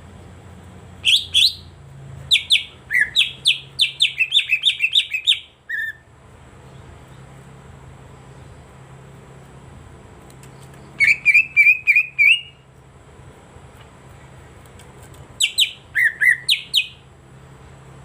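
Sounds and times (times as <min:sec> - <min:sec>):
faint low hum: 0:00.0 - 0:18.0
bird whistling song: 0:01.0 - 0:01.7, 0:02.3 - 0:06.1, 0:10.8 - 0:12.6, 0:15.4 - 0:17.0.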